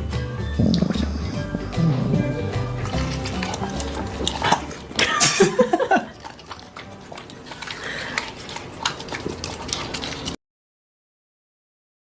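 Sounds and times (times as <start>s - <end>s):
dog whining: 0.4s - 4.8s.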